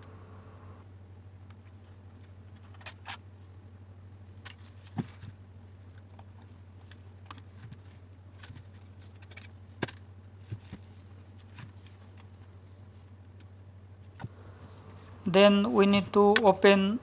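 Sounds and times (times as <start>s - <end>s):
steady low hum: 0.0s - 0.8s, 14.2s - 17.0s.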